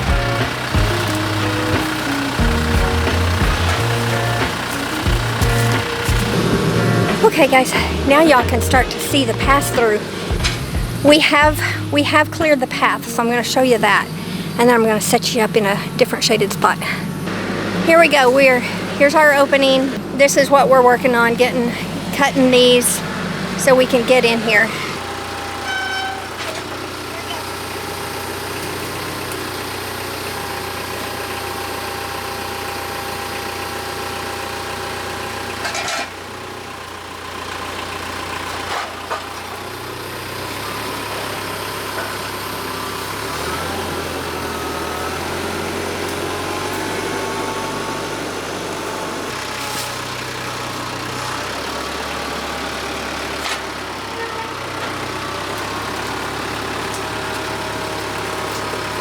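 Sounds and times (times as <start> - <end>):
tractor diesel engine running: 0.0 - 59.0.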